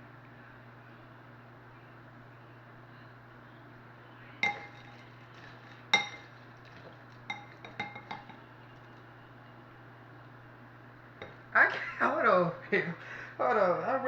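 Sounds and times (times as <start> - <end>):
spoon clinking against bowl: 4.4 - 8.4.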